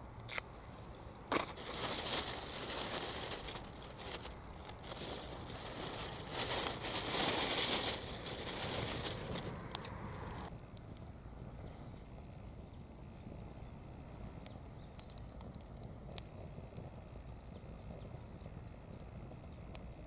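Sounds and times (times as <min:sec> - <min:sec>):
crinkling and rustling: 0:00.8 - 0:10.5.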